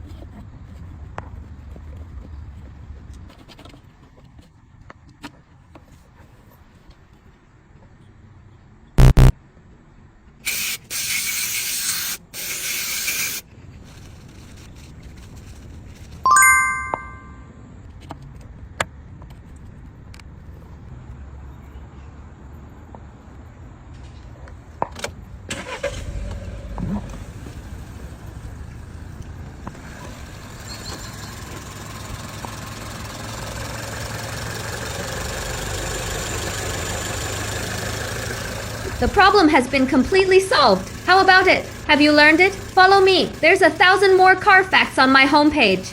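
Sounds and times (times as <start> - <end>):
short loud beeps: 9.0 - 9.3, 16.3 - 17.4
car engine running: 31.4 - 45.9.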